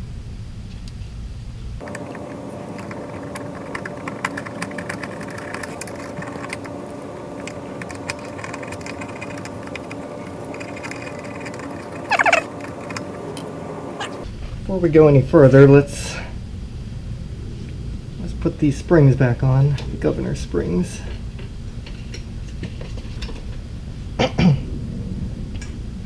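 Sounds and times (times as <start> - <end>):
metal and plastic parts clicking: 1.8 - 14.2
steady hum: 1.8 - 14.3
cat meow: 12.1 - 12.5.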